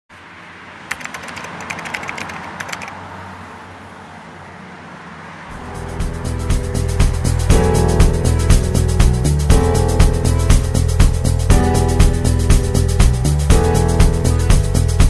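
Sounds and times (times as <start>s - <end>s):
music: 5.5s - 15.0s.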